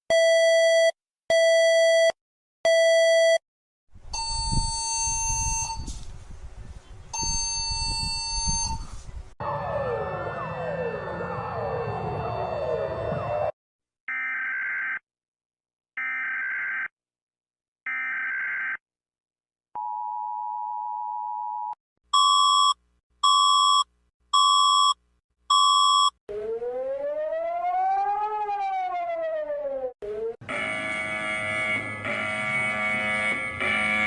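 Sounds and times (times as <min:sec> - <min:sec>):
loud short beeps: 0:04.2 - 0:05.9, 0:07.2 - 0:08.8, 0:22.2 - 0:26.2
siren wailing: 0:09.4 - 0:13.6, 0:26.3 - 0:34.0
buzzy electronic data bursts: 0:30.5 - 0:34.0.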